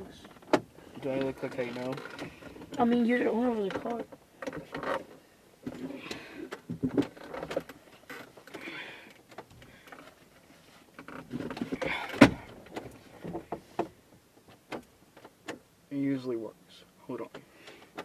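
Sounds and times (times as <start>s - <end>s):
clicks and rustles of hands working: 3.6s - 15.6s.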